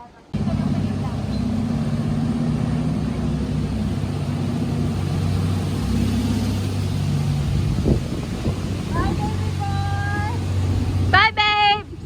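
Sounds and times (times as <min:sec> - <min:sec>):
car engine running: 0:00.4 - 0:09.7
road noise: 0:00.4 - 0:12.0.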